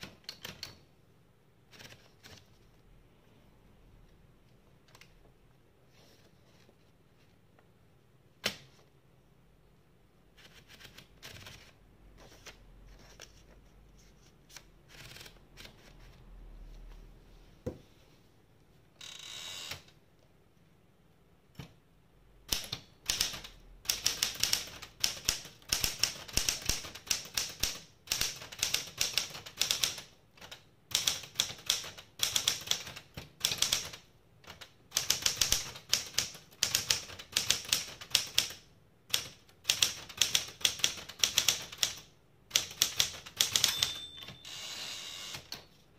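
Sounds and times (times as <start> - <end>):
manual typewriter typing: 0.0 - 0.8, 1.7 - 2.5, 10.4 - 11.8, 14.8 - 16.2, 22.5 - 45.6.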